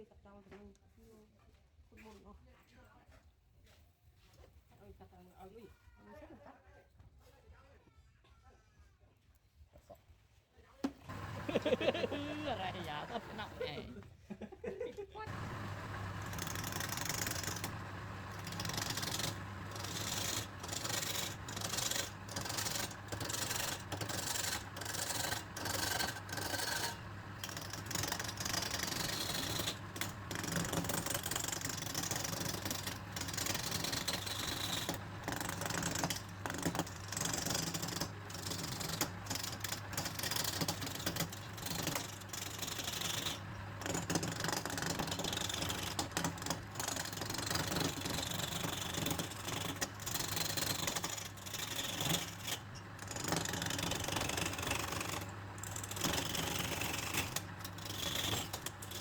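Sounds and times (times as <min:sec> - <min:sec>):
tool rasping on spinning wood: 0:11.1 - 0:13.8, 0:15.3 - 0:59.0
lathe motor hum: 0:11.1 - 0:13.9, 0:15.2 - 0:59.0.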